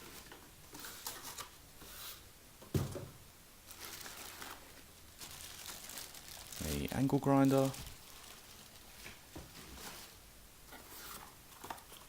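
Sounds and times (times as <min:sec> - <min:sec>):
packaging rustling: 0:03.7 - 0:12.0.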